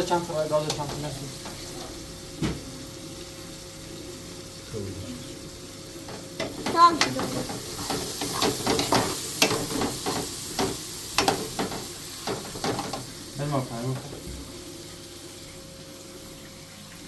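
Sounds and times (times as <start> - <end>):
food sizzling: 0.0 - 17.0
utensil scraping in pan: 6.0 - 14.2.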